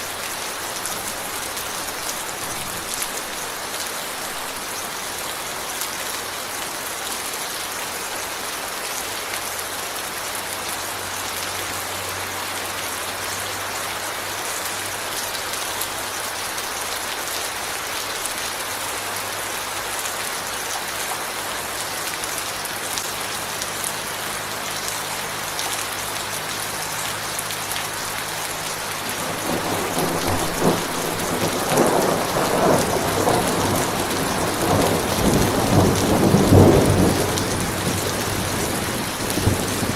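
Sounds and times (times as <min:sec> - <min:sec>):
rain hissing: 0:21.1 - 0:39.9
thunder rumbling: 0:29.1 - 0:39.9.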